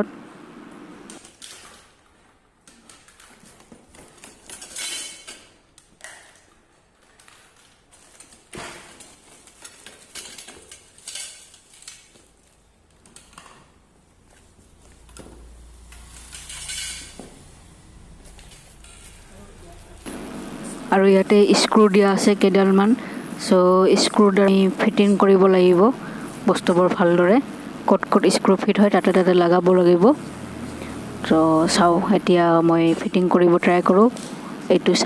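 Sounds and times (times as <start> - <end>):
packaging rustling: 6.0 - 13.6.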